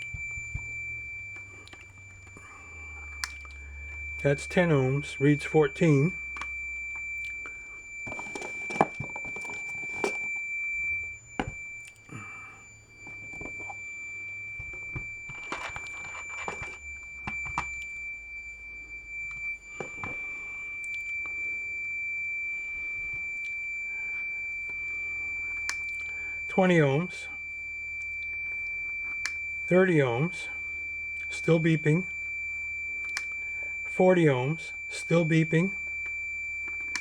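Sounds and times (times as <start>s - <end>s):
multimeter continuity beep: 0.0s - 37.0s
handling clicks and rustles: 14.6s - 17.8s.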